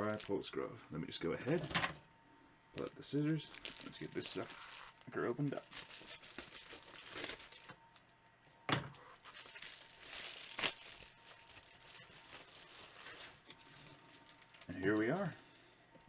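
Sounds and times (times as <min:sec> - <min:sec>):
packaging crinkling and tearing: 0:00.0 - 0:00.4, 0:02.8 - 0:08.1, 0:09.2 - 0:15.3
scissors cutting packaging: 0:05.6 - 0:07.8, 0:09.2 - 0:15.2.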